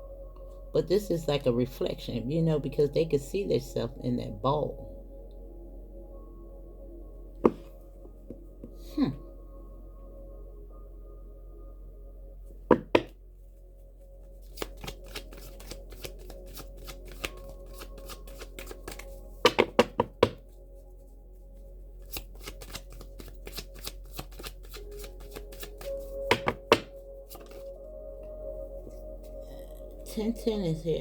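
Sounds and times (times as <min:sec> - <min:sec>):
soft background music: 0:00.0 - 0:31.0
cards being shuffled: 0:14.3 - 0:20.4, 0:22.0 - 0:27.7.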